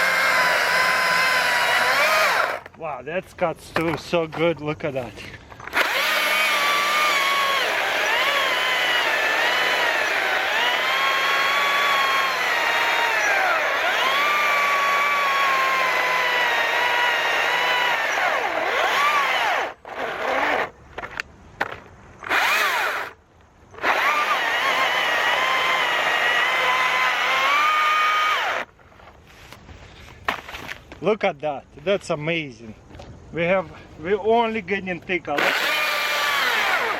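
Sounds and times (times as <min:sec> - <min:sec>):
electric chainsaw cutting log: 0:00.0 - 0:02.7, 0:05.6 - 0:21.1, 0:22.2 - 0:23.2, 0:23.8 - 0:28.7, 0:35.4 - 0:36.9.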